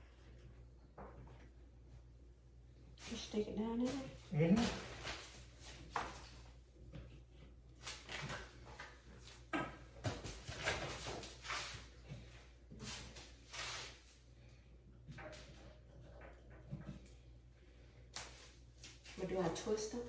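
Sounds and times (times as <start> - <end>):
scrapes and rustles: 3.0 - 14.3.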